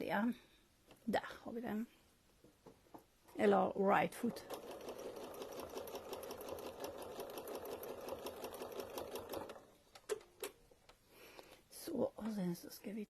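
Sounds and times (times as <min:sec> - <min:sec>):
sewing machine stitching: 0:04.2 - 0:09.7.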